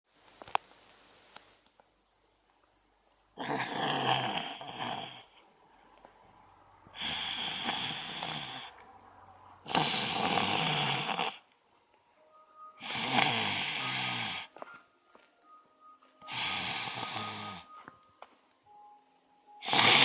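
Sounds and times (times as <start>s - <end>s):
loud rasping snores: 3.4s - 5.4s, 6.9s - 8.8s, 9.6s - 11.5s, 12.8s - 14.6s, 16.2s - 17.7s, 19.6s - 20.0s.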